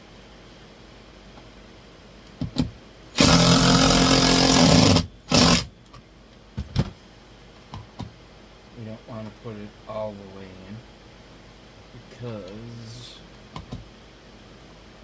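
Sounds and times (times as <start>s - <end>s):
power drill driving a screw: 3.2s - 5.7s.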